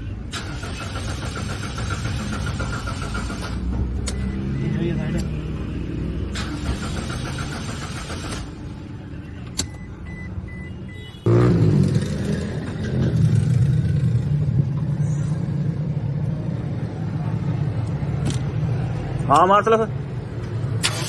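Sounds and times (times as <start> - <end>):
engine starter cranking: 0.3 - 3.7, 6.4 - 8.6, 20.8 - 21.0
car engine revving and running: 0.3 - 8.7, 9.6 - 19.4
short beeps: 9.2 - 11.3.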